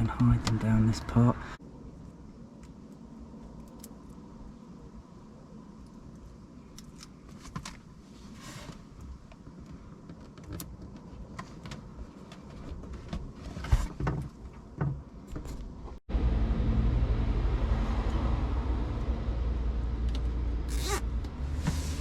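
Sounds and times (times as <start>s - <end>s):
steady low hum: 0.0s - 8.2s, 14.6s - 22.0s.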